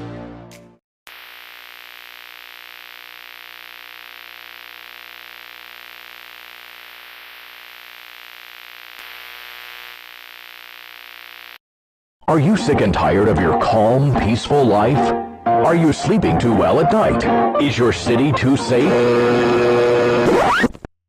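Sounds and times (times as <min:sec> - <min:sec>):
faint buzz of steady tones: 0:01.1 - 0:11.6
static hiss: 0:01.1 - 0:11.6.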